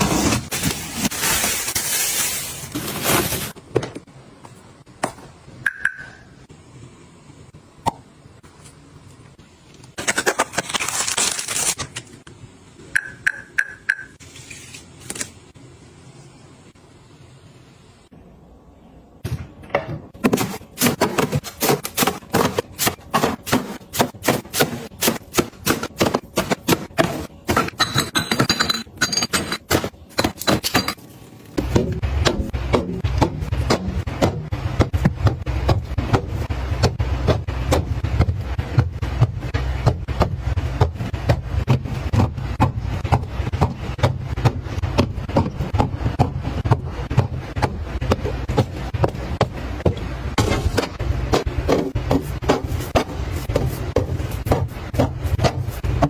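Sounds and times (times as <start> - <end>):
hard objects tapping and knocking: 31.6 - 56.0.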